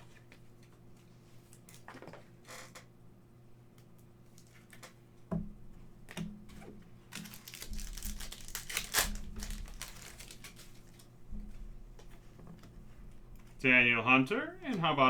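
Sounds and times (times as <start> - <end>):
card pack wrapper crinkling and tearing: 7.1 - 11.1.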